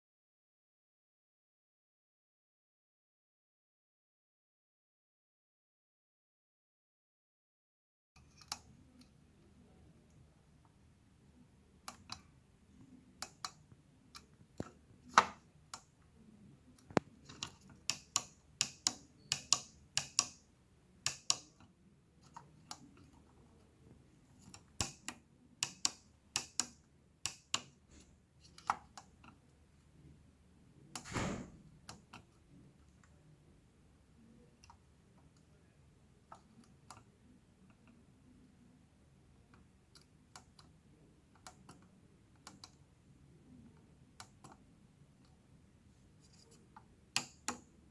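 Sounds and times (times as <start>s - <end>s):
small clicks and taps: 8.2s - 9.2s, 11.8s - 16.0s, 16.8s - 29.4s, 39.5s - 42.8s, 43.8s - 44.6s, 46.2s - 47.7s.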